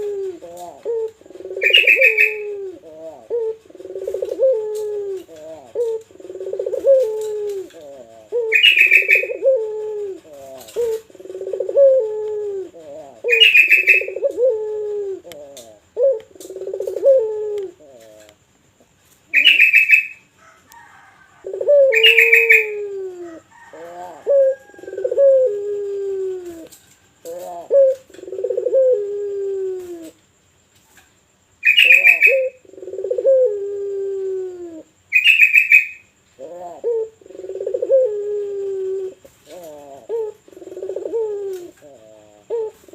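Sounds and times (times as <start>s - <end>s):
dove cooing: 0.0s - 30.4s, 31.6s - 42.9s
high-pitched chirping bursts: 1.6s - 2.5s, 8.5s - 9.4s.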